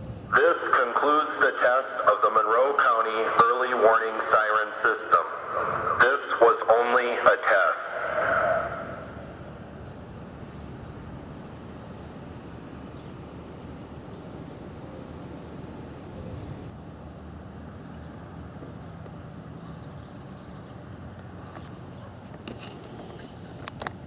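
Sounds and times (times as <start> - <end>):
traffic rumble: 0.0 - 24.0.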